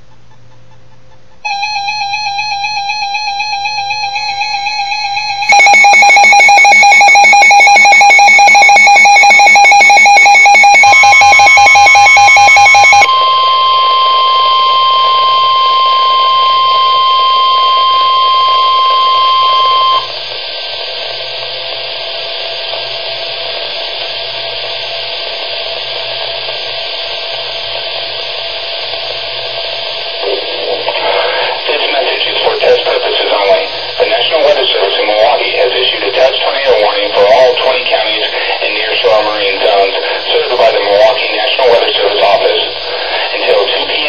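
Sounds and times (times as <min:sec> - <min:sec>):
steady alarm tone: 0:01.4 - 0:20.2, 0:29.1 - 0:44.0
loud pulsing buzz: 0:06.6 - 0:24.3.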